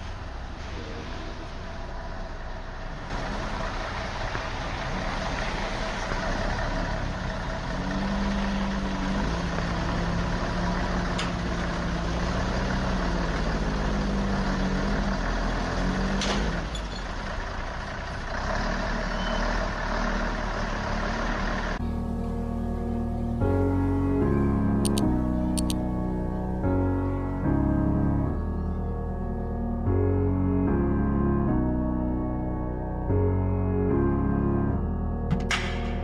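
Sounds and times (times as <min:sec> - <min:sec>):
road noise: 0:00.0 - 0:36.0
vehicle engine running: 0:00.0 - 0:36.0
faint clicks: 0:24.9 - 0:25.8.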